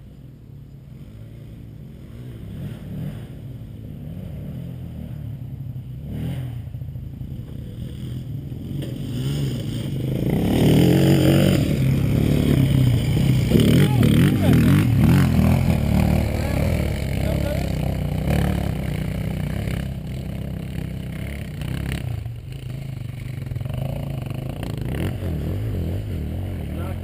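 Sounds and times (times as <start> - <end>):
truck engine revving: 8.8 - 22.8.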